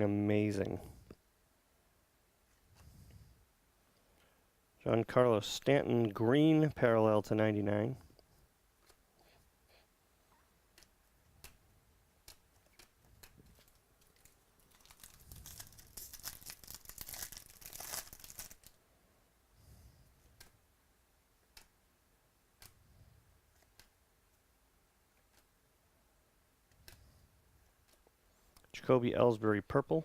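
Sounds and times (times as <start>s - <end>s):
cards clicking and rustling: 12.7s - 18.8s
wrapper crinkling and tearing: 13.6s - 18.8s.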